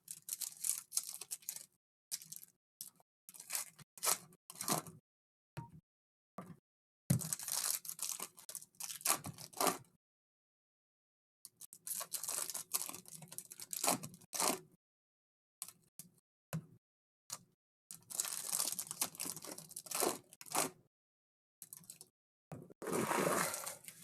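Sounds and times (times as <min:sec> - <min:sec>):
packaging tearing and crinkling: 0:00.2 - 0:01.6, 0:18.1 - 0:20.7.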